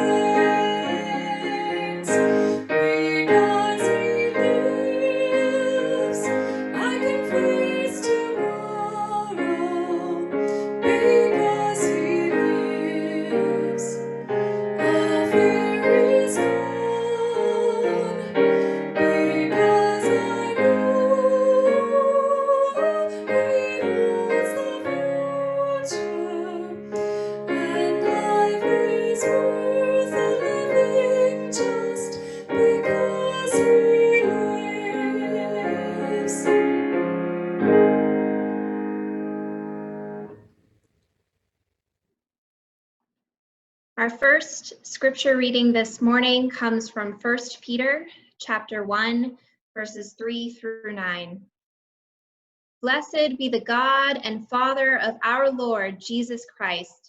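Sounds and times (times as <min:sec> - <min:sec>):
person singing with vibrato: 0:00.0 - 0:38.5
piano: 0:00.0 - 0:40.7.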